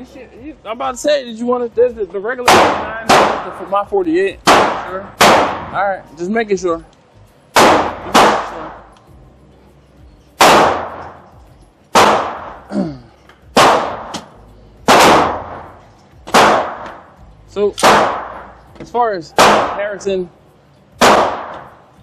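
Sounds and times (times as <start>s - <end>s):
pistol shots echoing: 2.4s - 3.7s, 4.4s - 5.7s, 7.5s - 8.8s, 10.4s - 11.2s, 11.9s - 12.7s, 13.5s - 15.7s, 16.3s - 17.0s, 17.8s - 18.6s, 19.4s - 20.0s, 21.0s - 21.8s.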